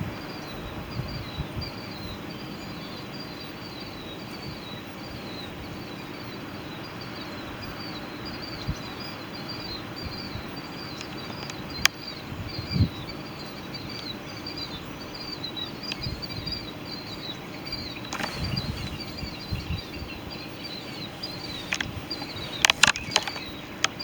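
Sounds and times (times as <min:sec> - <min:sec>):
high repeated chirping: 0:17.6 - 0:24.0
sharp click: 0:20.8 - 0:24.0.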